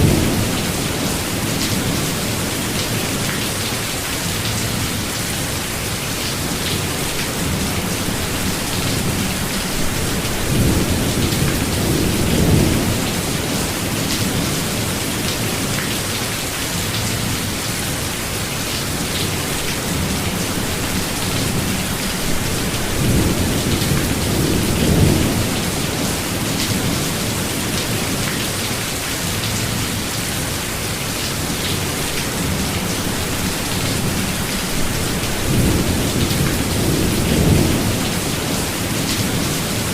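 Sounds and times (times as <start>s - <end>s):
steady rain pattering: 0.0s - 39.9s
low rolls of thunder: 8.4s - 14.5s, 20.1s - 27.2s.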